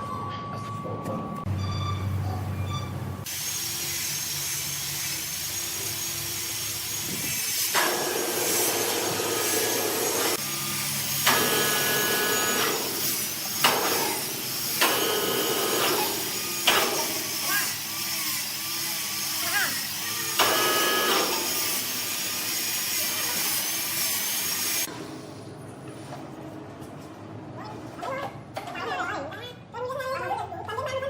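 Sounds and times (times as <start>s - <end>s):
power tool cutting wood: 3.2s - 24.9s.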